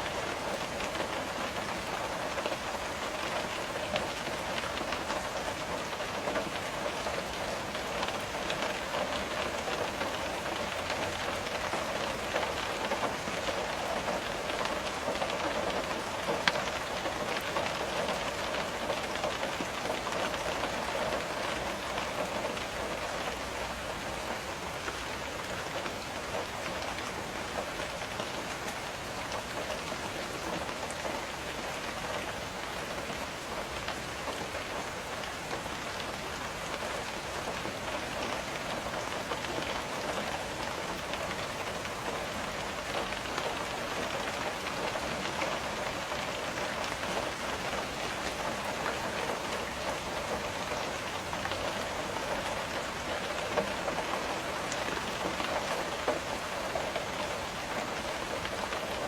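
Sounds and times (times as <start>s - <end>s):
rain tapping on window glass: 0.0s - 59.0s.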